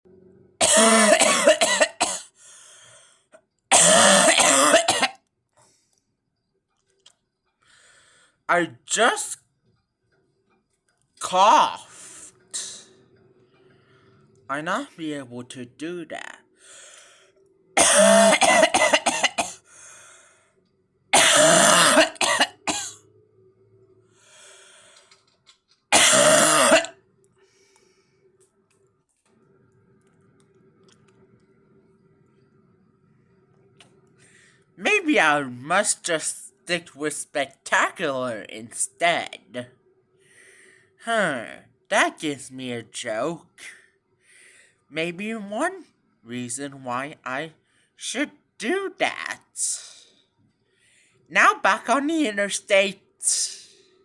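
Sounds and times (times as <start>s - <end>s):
person coughing: 0.6s - 2.3s, 3.7s - 5.2s, 17.8s - 19.6s, 21.2s - 23.0s, 26.0s - 26.9s.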